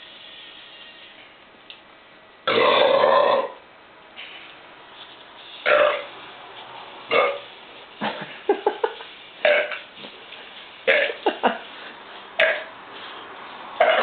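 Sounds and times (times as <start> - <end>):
man burping: 2.5 - 3.6, 9.4 - 9.8, 10.9 - 11.2, 12.4 - 12.7.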